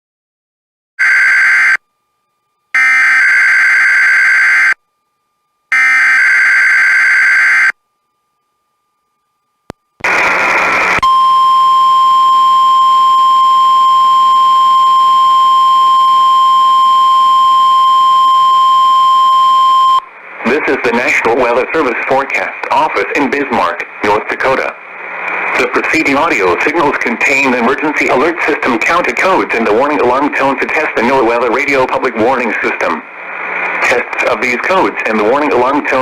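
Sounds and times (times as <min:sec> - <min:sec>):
steady warning alarm tone: 0:01.0 - 0:08.2, 0:11.0 - 0:20.2.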